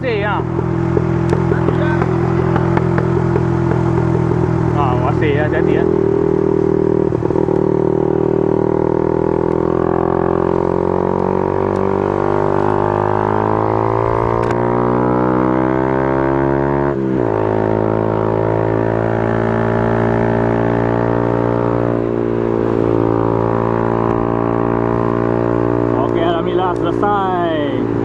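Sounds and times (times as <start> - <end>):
motorcycle engine accelerating: 0.0 - 28.0.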